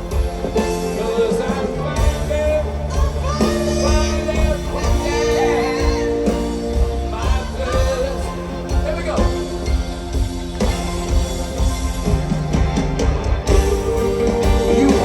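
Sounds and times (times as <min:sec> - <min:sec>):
live rock band playing ballad: 0:00.0 - 0:15.0
stadium crowd: 0:00.0 - 0:15.0
person singing: 0:13.4 - 0:15.0.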